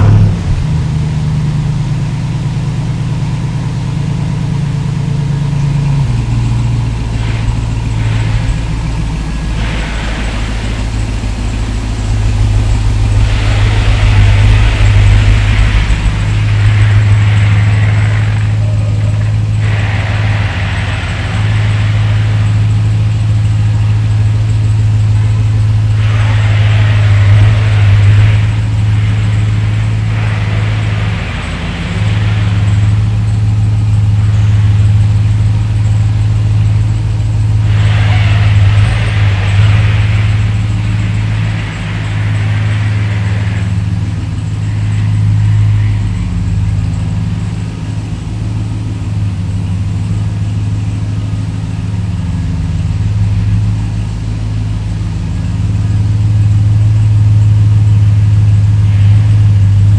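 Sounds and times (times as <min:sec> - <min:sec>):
rushing hiss: 0:00.0 - 0:01.7, 0:04.3 - 0:59.9
vehicle engine running: 0:00.0 - 0:59.9.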